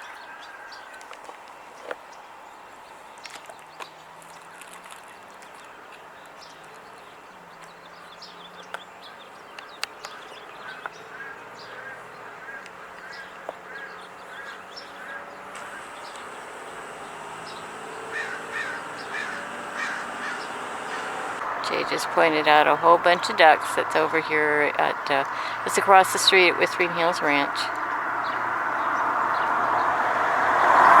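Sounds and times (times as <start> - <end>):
wild birds chirping: 0.0 - 31.0.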